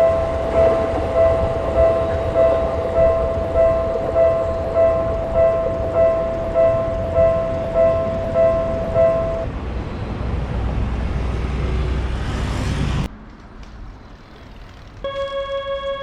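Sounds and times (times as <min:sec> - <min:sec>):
level-crossing alarm bell: 0:00.0 - 0:09.5, 0:15.1 - 0:16.0
synthesizer tune: 0:00.0 - 0:09.5, 0:15.1 - 0:16.0
passing train rumble: 0:00.0 - 0:16.0.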